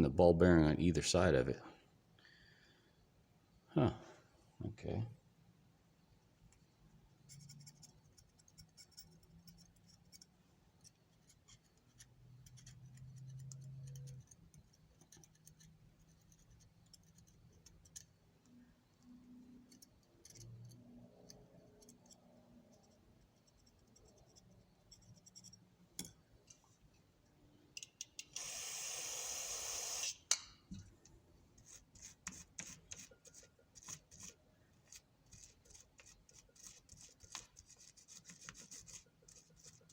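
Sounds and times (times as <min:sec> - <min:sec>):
metal parts clicking and tapping: 0:19.7 - 0:22.2, 0:24.9 - 0:26.6.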